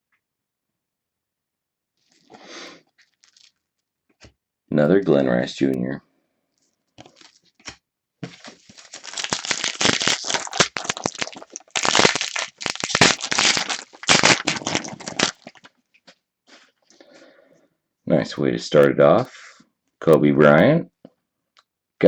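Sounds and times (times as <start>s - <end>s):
plastic wrapper tearing and crinkling: 3.0s - 3.6s, 7.0s - 15.8s.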